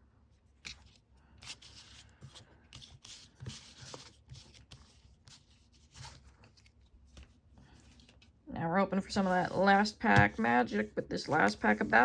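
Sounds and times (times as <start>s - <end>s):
cards rustling and sliding: 0.6s - 8.4s
small scrapes and light taps: 0.6s - 8.4s.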